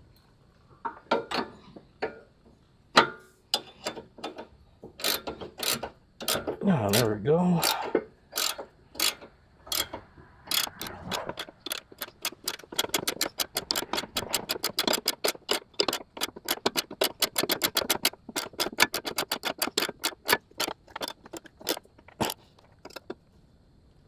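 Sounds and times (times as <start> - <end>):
ratchet wrench clicking: 5.0 - 23.2.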